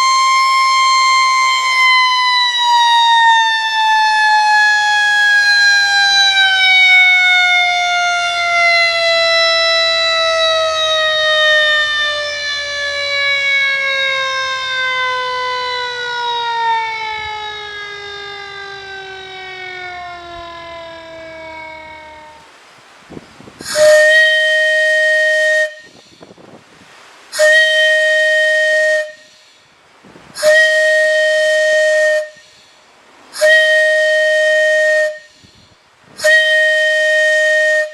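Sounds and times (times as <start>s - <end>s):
mechanical siren winding down: 0.0s - 22.5s.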